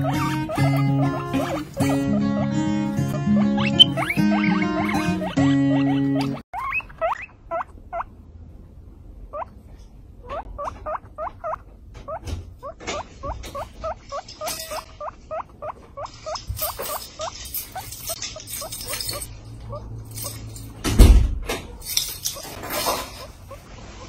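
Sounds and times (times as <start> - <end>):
guinea pigs squeaking: 0.0 - 8.1, 9.3 - 9.6, 10.2 - 20.6, 21.7 - 24.0
rustling: 12.0 - 20.8, 21.6 - 24.0.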